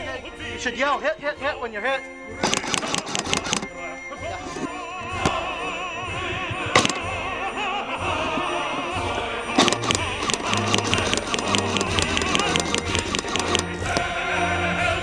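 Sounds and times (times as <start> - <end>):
classical music: 0.0 - 15.0
sharp clicks: 2.4 - 3.7, 9.6 - 14.1.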